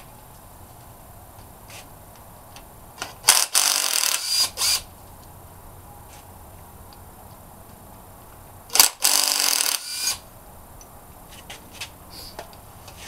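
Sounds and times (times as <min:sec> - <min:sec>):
handheld power tool running: 0:03.3 - 0:04.8, 0:08.7 - 0:10.2.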